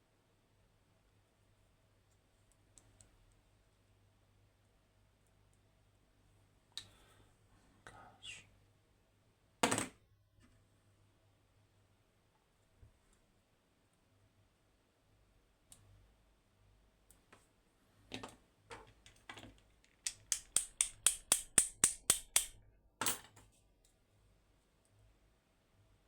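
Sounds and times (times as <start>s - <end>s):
metal lock parts clicking: 19.9s - 23.4s.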